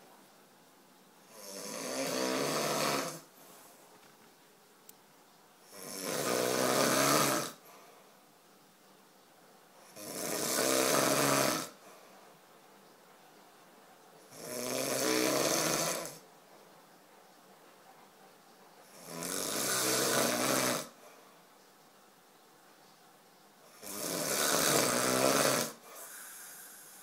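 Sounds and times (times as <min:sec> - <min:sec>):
rasping snoring: 0:01.3 - 0:03.3, 0:05.7 - 0:07.6, 0:09.9 - 0:11.8, 0:14.3 - 0:16.2, 0:18.9 - 0:21.0, 0:23.7 - 0:27.0.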